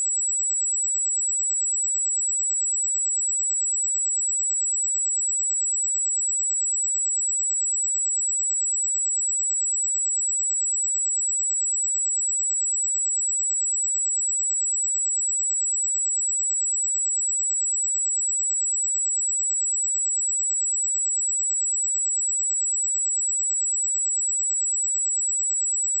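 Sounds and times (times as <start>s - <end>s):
high-pitched sine-wave test tone: 10.7s - 26.0s.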